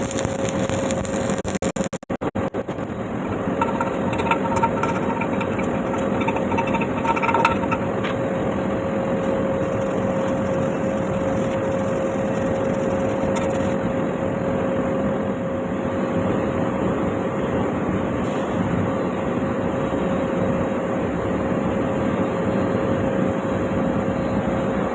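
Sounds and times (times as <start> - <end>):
welding arc crackling hiss: 0.0 - 2.2, 9.2 - 13.8
steady hum: 0.0 - 17.7.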